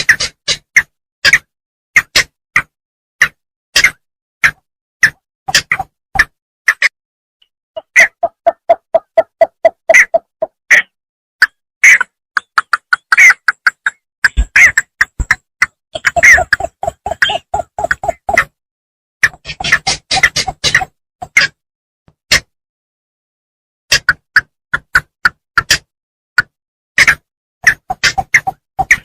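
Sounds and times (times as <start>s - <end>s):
sharp clicking bird notes: 0.0s - 18.5s, 23.9s - 29.0s
bittern calling: 16.0s - 18.5s.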